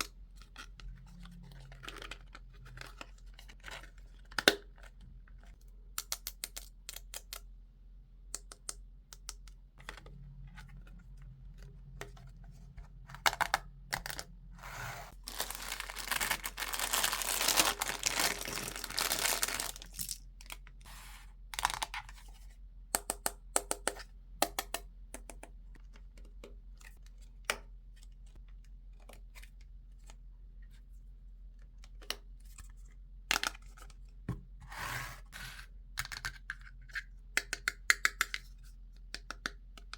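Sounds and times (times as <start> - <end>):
packaging tearing and rustling: 15.1 - 20.2.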